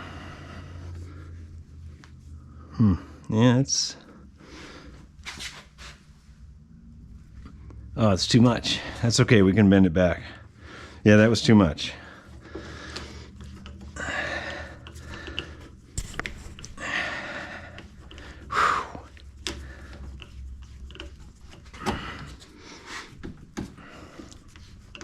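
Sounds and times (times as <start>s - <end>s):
person breathing heavily: 0.0s - 3.3s, 4.0s - 5.2s, 10.4s - 11.1s, 11.9s - 20.5s, 21.8s - 24.8s.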